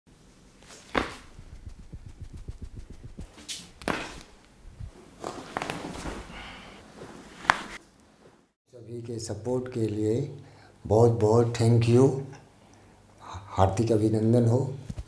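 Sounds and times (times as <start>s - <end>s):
sharp hand slaps: 0.7s - 1.4s, 3.3s - 4.3s, 7.4s - 7.8s
low pounding thumps: 1.1s - 5.0s.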